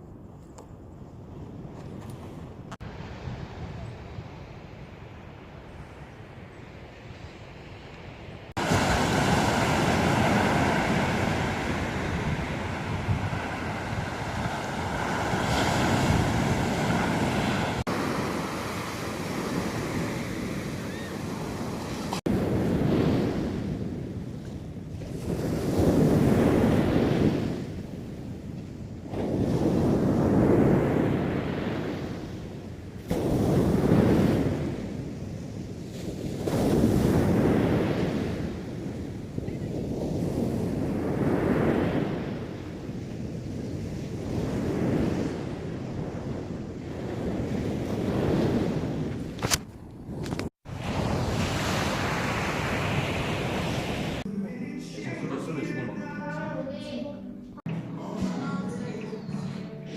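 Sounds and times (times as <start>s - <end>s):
wind buffeting microphone: 0.0s - 54.3s
sea surf washing on shore: 6.8s - 49.6s, 50.2s - 54.3s.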